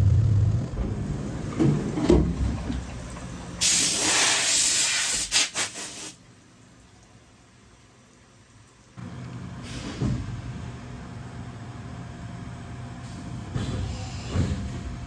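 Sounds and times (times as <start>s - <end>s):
low rumble: 0.0s - 1.6s
compressed air hissing: 3.6s - 6.2s.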